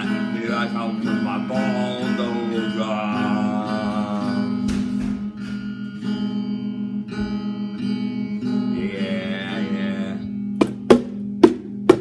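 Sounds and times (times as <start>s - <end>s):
person singing: 0.0s - 5.0s, 8.7s - 10.4s
strummed acoustic guitar: 0.0s - 12.0s.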